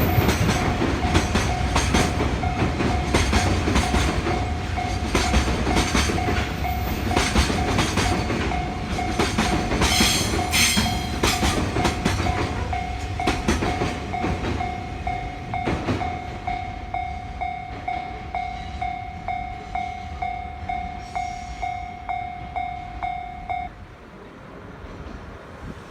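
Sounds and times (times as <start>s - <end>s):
train wagons clacking over rails: 0.0s - 23.8s
level crossing bell dinging: 5.7s - 23.8s.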